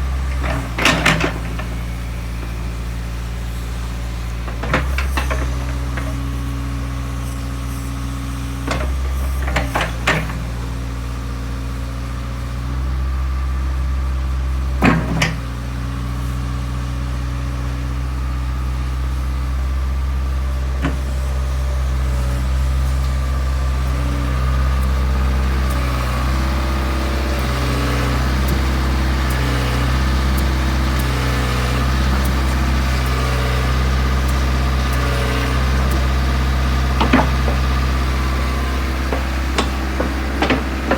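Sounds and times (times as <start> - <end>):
excavator diesel engine running: 0.0 - 40.9
sharp clunks: 0.4 - 2.6, 4.5 - 6.2, 14.8 - 15.5, 36.9 - 40.9.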